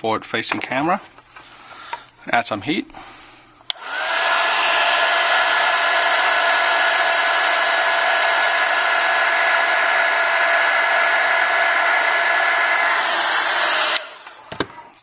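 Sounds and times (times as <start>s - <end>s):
hot-air blower running: 3.7s - 15.0s.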